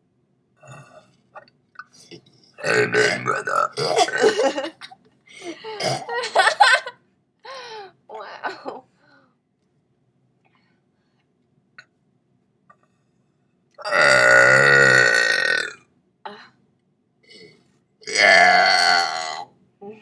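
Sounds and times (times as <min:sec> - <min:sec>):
loud belch: 0:00.6 - 0:01.1, 0:02.6 - 0:04.5, 0:05.8 - 0:06.1, 0:13.8 - 0:15.8, 0:17.3 - 0:19.5.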